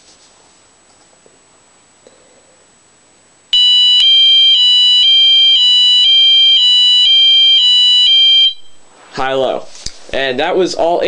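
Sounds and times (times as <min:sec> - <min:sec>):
fire alarm horn high-low tone: 0:03.5 - 0:08.8.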